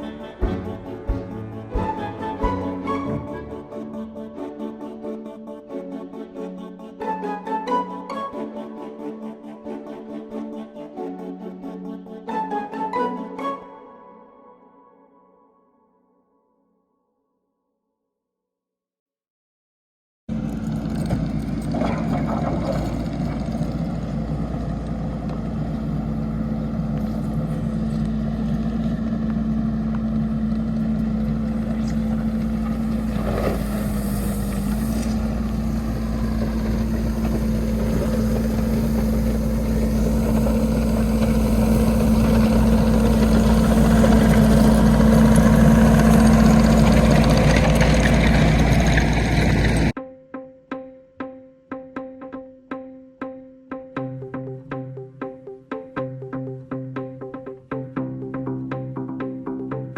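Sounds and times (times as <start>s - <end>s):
diesel engine running under load: 0.0s - 3.7s, 20.3s - 50.0s.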